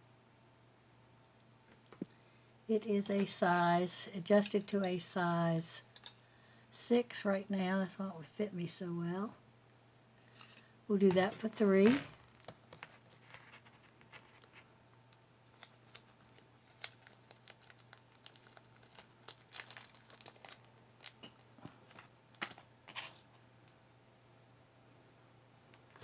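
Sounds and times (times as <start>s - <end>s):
low steady hum: 0.0s - 26.0s
faint crinkling rustles: 1.4s - 6.6s, 10.2s - 23.8s, 25.6s - 26.0s
small clicks of items handled: 5.6s - 6.2s, 10.3s - 23.8s.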